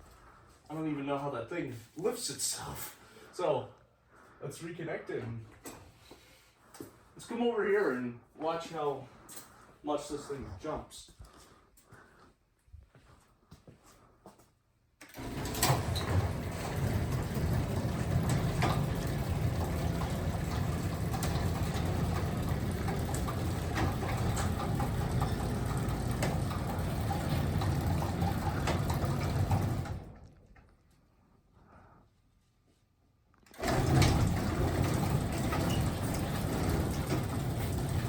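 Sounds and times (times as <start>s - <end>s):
garage door opener running: 15.0s - 30.4s, 33.5s - 38.0s.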